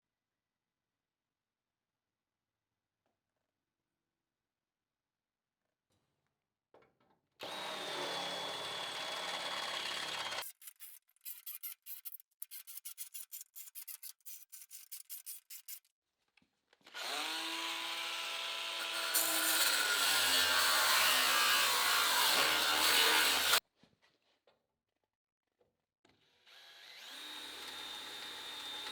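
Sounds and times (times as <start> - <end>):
power tool whining: 7.4 - 10.4, 16.9 - 23.6.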